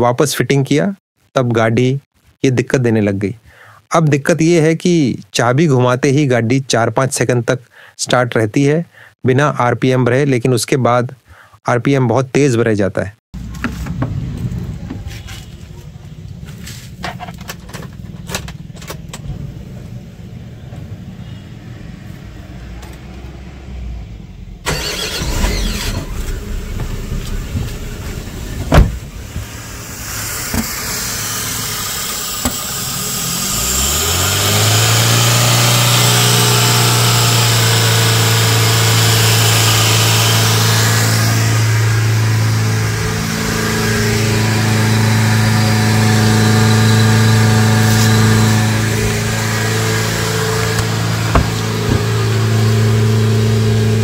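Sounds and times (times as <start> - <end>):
car engine starting and idling: 22.6 - 54.0
engine pop: 24.7 - 32.8, 50.6 - 52.4.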